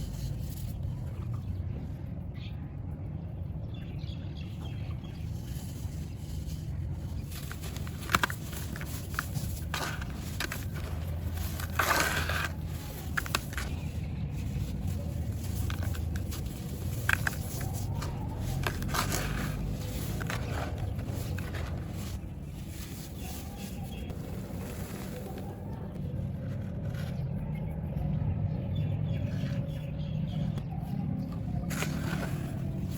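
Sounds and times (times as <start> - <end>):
dry clumps crumbling and cracking: 5.4 - 27.5, 31.2 - 32.9.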